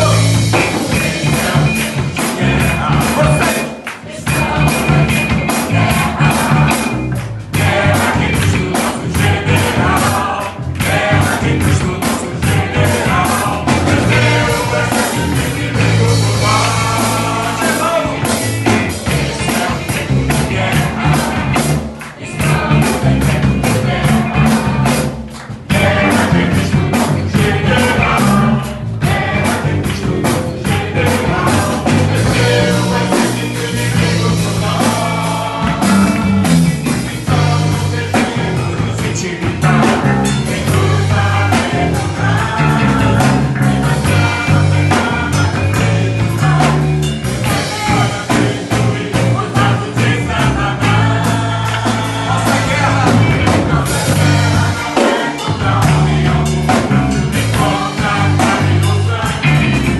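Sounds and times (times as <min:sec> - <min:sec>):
rock band playing: 0:00.0 - 0:59.9
person singing: 0:47.5 - 0:56.5.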